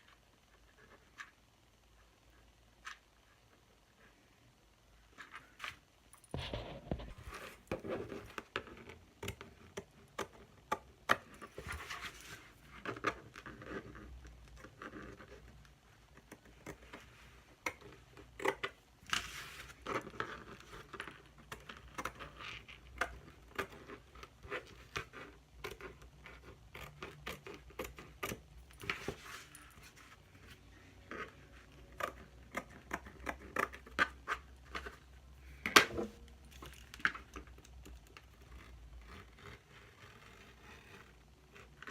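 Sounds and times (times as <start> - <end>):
faint low hum: 0.0 - 41.9.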